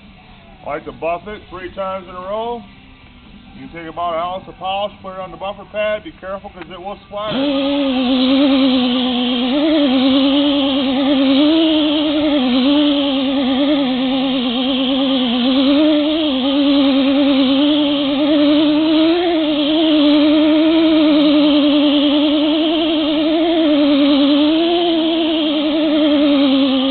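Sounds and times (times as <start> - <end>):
electric buffer motor hum: 0.0 - 26.9.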